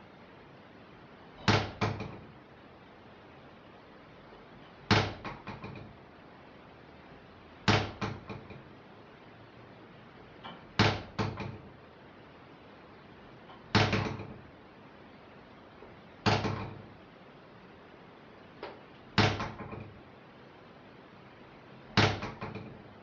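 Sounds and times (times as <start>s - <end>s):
door rattling in its frame: 1.4s - 2.3s, 4.9s - 6.0s, 7.6s - 8.6s, 10.4s - 11.8s, 13.5s - 14.5s, 16.2s - 16.9s, 19.2s - 20.0s, 21.9s - 22.9s.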